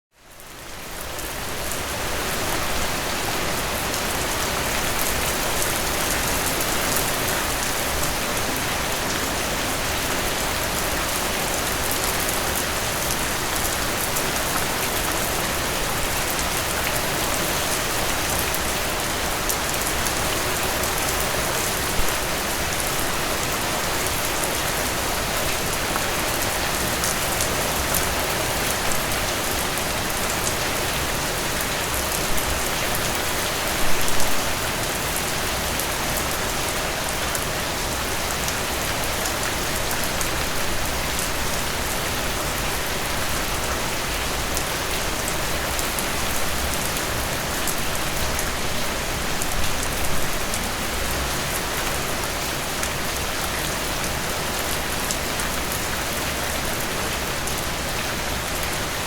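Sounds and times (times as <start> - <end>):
rain on a surface: 0.1 - 59.0.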